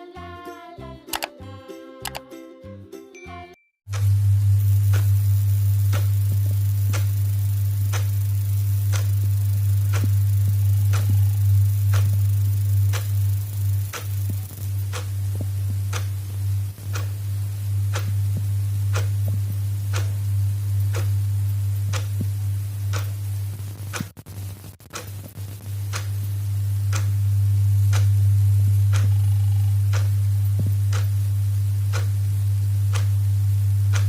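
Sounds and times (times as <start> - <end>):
clock ticking: 1.1 - 1.4, 4.9 - 16.3, 16.9 - 17.2, 17.9 - 18.2, 18.9 - 20.2, 20.9 - 21.2, 21.9 - 22.3, 22.9 - 23.2, 26.9 - 27.2, 27.9 - 28.1, 28.9 - 29.2, 29.9 - 31.1, 31.9 - 32.1, 32.9 - 33.2
low hum: 3.9 - 24.0, 25.3 - 34.0.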